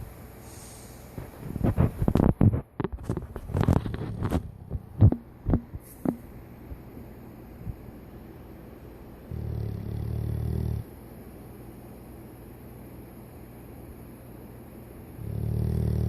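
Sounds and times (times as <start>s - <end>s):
dog snoring: 9.3s - 10.9s, 15.2s - 16.0s.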